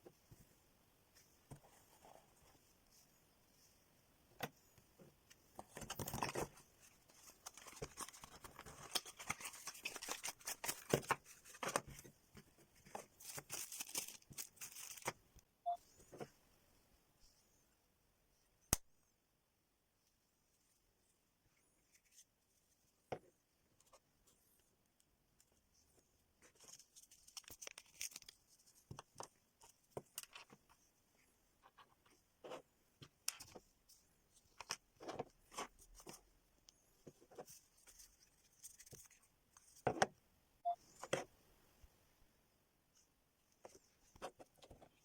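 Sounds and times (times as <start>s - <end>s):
paper and plastic rustling: 5.6s - 12.1s, 12.8s - 15.2s.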